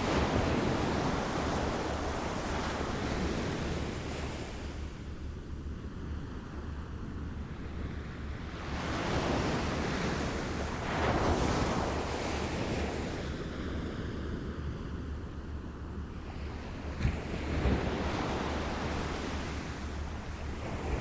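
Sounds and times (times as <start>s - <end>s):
small waves lapping on shore: 0.0s - 5.3s
wind rumble on microphone: 0.0s - 21.0s.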